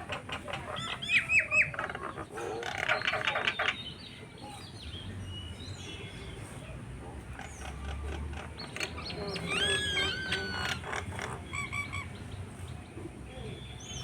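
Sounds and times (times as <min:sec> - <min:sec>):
harsh rattling bird chatter: 0:00.0 - 0:04.2, 0:07.2 - 0:12.6.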